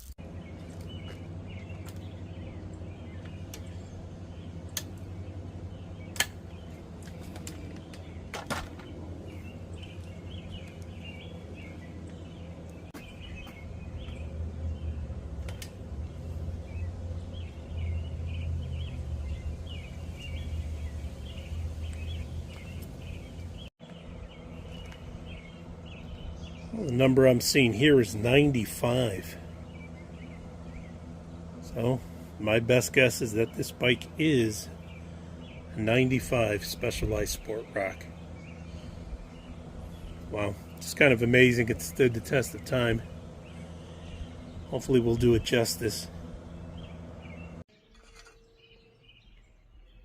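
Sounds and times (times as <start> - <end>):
birds chirping: 0.0 - 50.0
low background rumble: 0.2 - 47.7
sharp clicks: 6.1 - 6.4.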